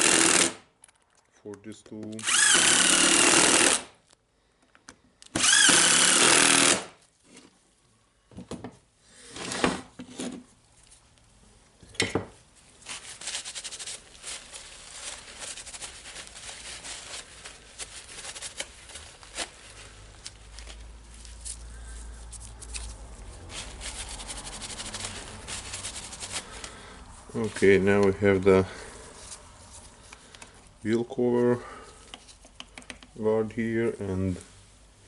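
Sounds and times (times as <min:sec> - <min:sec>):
electric screwdriver driving screws: 0:00.0 - 0:00.6, 0:02.2 - 0:03.9, 0:05.3 - 0:06.9.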